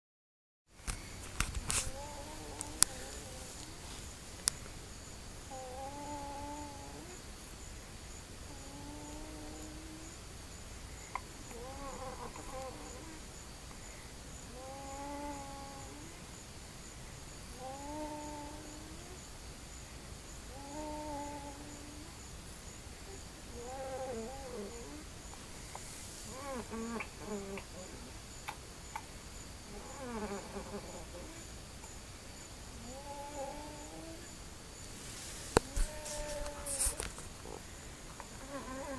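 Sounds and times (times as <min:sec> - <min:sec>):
squeaky noisy breathing: 0:35.0 - 0:38.9.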